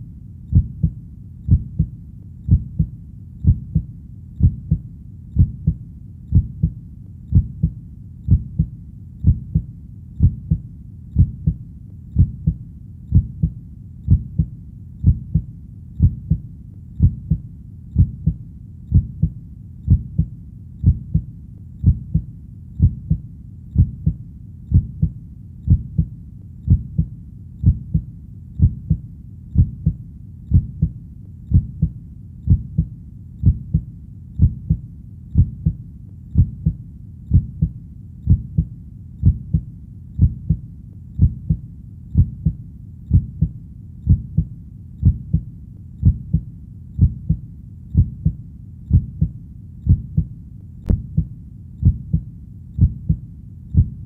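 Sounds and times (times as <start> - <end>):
faint low hiss: 0.0 - 54.0
heartbeat double thump: 0.5 - 1.9, 2.5 - 4.8, 5.4 - 10.6, 11.2 - 11.6, 12.2 - 16.4, 17.0 - 17.4, 18.0 - 23.2, 23.8 - 26.1, 26.7 - 29.0, 29.6 - 34.8, 35.4 - 35.8, 36.4 - 40.6, 41.2 - 41.6, 42.2 - 43.5, 44.1 - 46.4, 47.0 - 47.4, 48.0 - 49.3, 49.9 - 52.2, 52.8 - 53.2, 53.8 - 54.0.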